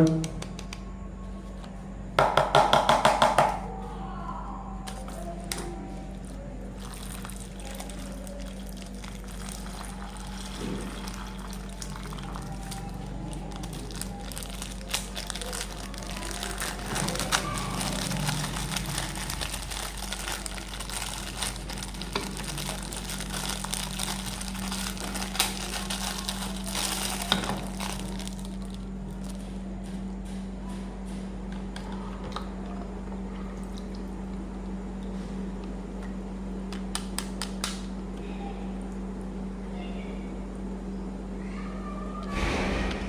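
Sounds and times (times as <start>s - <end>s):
steady low hum: 0.0s - 43.0s
plastic packaging crinkling: 4.9s - 29.6s.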